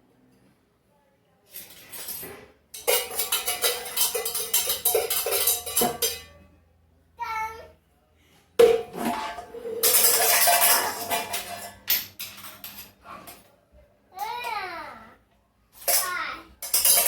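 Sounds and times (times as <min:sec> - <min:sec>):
metal spoons clacking rhythmically: 0:02.7 - 0:06.5, 0:09.8 - 0:13.0, 0:15.8 - 0:17.0.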